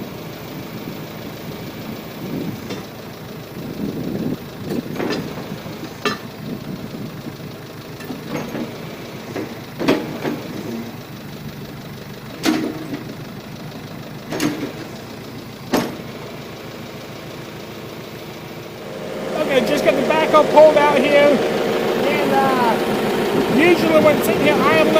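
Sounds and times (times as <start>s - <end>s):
diesel engine running: 0.0s - 24.9s
sharp metallic clanks: 12.4s - 13.1s.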